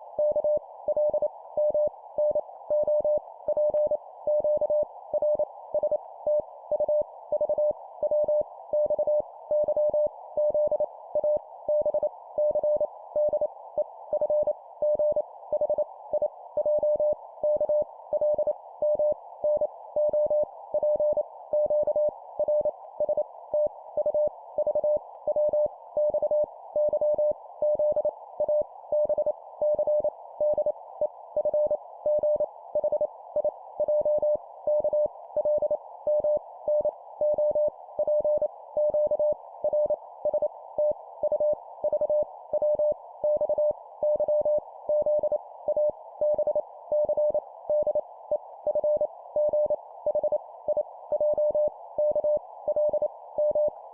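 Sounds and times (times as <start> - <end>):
morse code beeps: 51.1 - 53.7.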